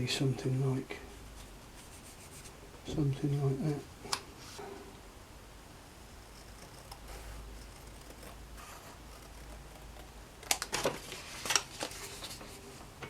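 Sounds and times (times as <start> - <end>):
scissors snipping paper: 6.4 - 10.9.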